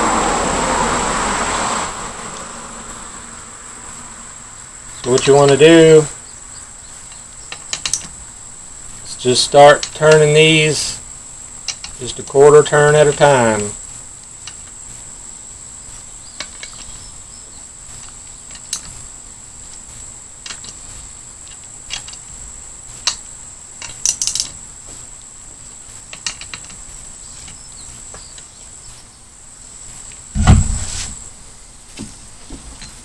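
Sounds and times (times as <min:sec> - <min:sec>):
faint high whine: 0:00.0 - 0:33.0
wrench clicking: 0:07.0 - 0:08.2, 0:23.8 - 0:24.6.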